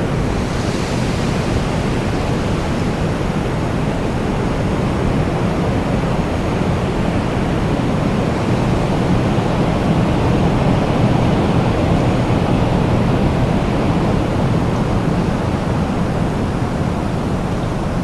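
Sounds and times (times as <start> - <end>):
wind blowing: 0.0 - 5.7.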